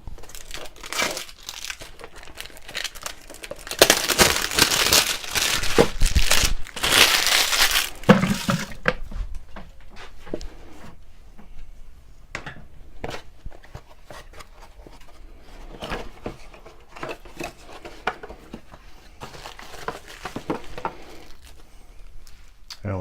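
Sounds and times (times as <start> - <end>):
plastic packaging crinkling: 0.0 - 8.8, 15.8 - 22.3.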